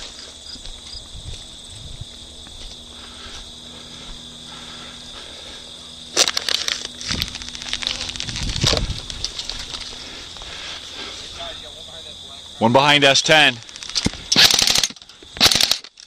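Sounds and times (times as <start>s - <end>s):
insects chirring: 0.0s - 16.0s
close rustling and crackling: 6.0s - 11.4s.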